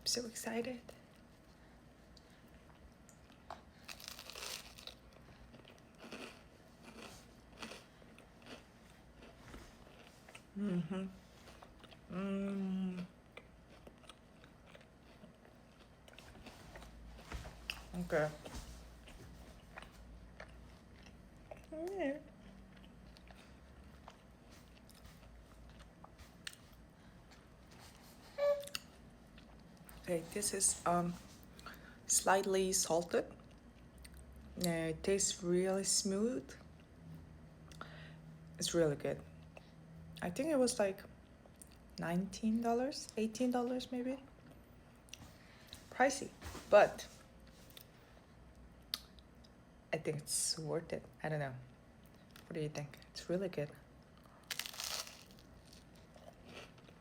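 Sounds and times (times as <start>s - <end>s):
chewing crunchy toast: 2.1s - 10.5s, 11.5s - 12.1s, 13.0s - 17.0s, 19.0s - 21.7s, 54.1s - 57.0s
person humming: 10.6s - 11.2s, 12.1s - 13.1s.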